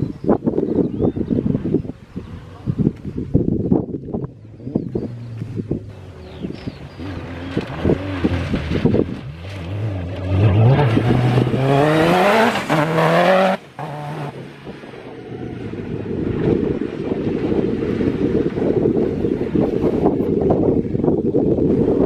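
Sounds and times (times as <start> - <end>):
wind buffeting microphone: 0.0 - 22.0
racing car engine accelerating: 4.9 - 16.0.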